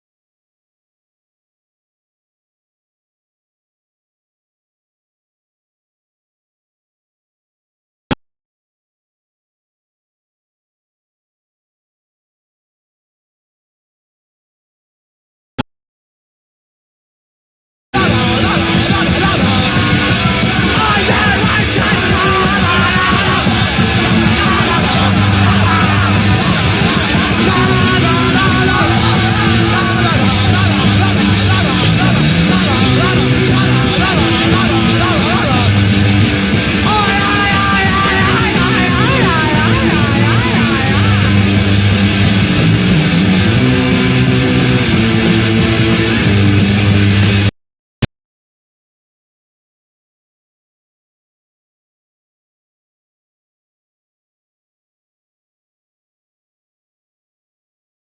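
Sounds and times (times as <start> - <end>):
shouted singing: 18.0 - 46.3
bass guitar: 18.0 - 47.5
distorted electric guitar strumming: 18.0 - 47.5
loud punk rock band: 18.0 - 47.5.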